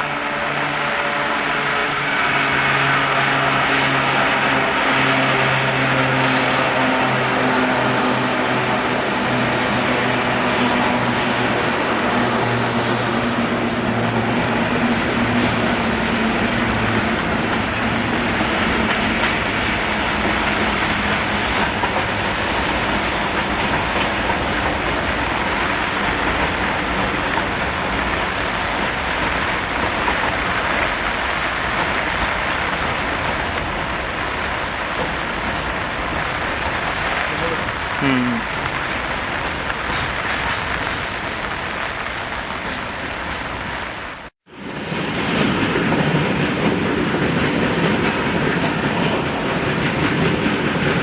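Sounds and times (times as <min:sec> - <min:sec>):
train rolling on rails: 0:00.0 - 0:51.0.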